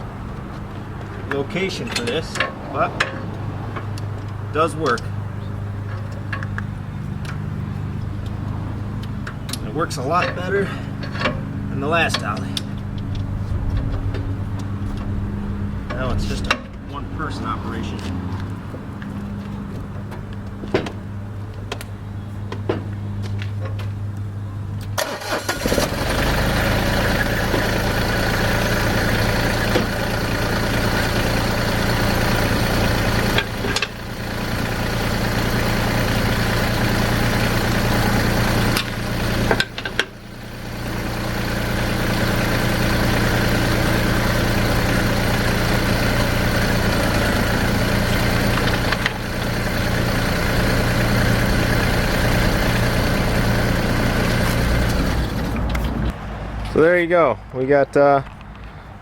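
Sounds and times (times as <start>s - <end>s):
tractor diesel engine idling: 25.0s - 56.1s.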